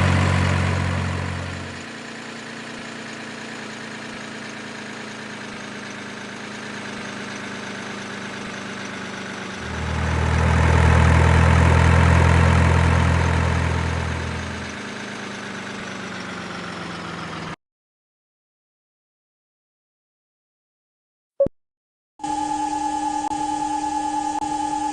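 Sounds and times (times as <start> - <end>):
diesel engine running: 0.0 - 17.6.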